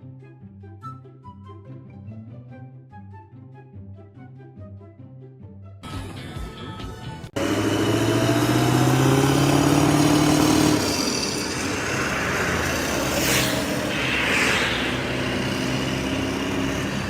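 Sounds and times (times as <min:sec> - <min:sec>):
engine revving: 0:07.4 - 0:17.0
short hissing rushes: 0:12.1 - 0:17.0.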